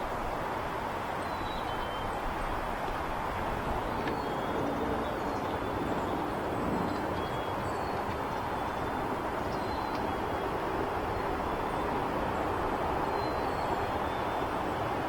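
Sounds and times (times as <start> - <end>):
busy highway traffic: 0.0 - 15.0
faint high bird calls: 13.0 - 14.9.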